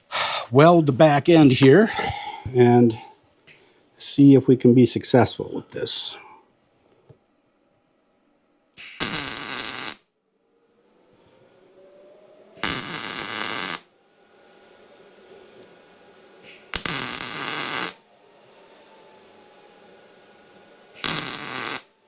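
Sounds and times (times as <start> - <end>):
faint steady hum: 0.0 - 22.0
welding arc crackling: 8.8 - 10.0, 12.6 - 13.8, 16.7 - 18.0, 21.0 - 21.9.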